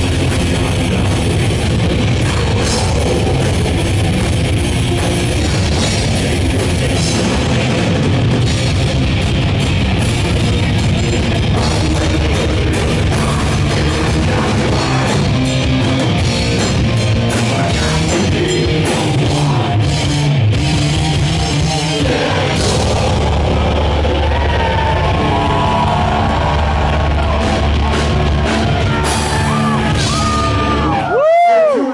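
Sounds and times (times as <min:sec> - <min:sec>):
wavering guitar notes: 0:00.0 - 0:31.4
heavy rock band playing: 0:00.0 - 0:31.7.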